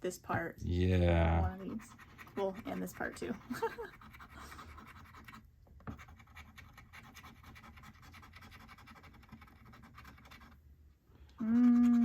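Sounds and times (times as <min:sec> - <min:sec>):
lottery ticket being scratched: 0:01.5 - 0:05.4.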